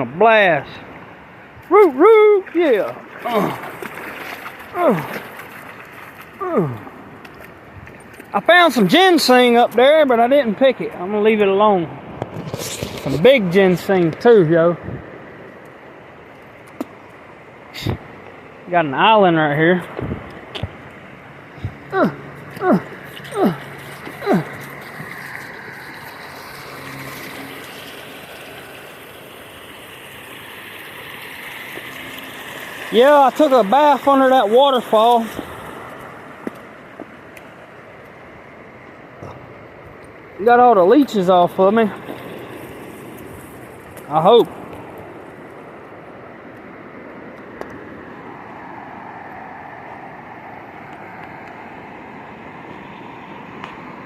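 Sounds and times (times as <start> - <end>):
flowing river water: 0.0 - 54.0
water rushing over waterfall: 1.7 - 7.3, 17.7 - 37.5.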